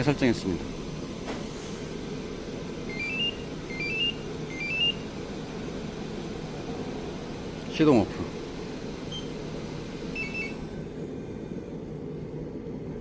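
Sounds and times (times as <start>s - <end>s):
remote beeping rising notes: 2.9s - 5.0s.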